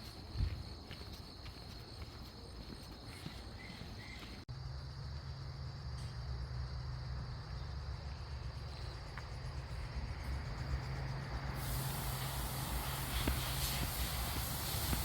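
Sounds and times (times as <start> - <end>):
crickets trilling: 0.0 - 15.0
broad hiss: 11.4 - 15.0.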